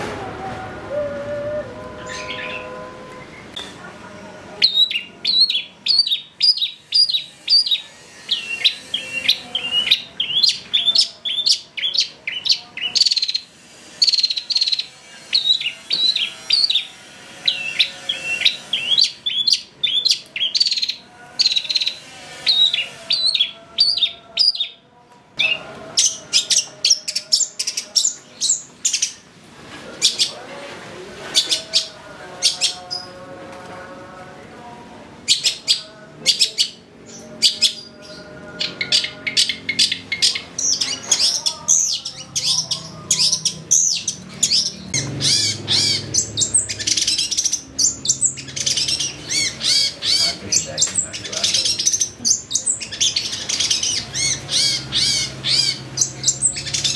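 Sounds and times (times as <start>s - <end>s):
bird chirping rapidly: 38.6s - 56.9s.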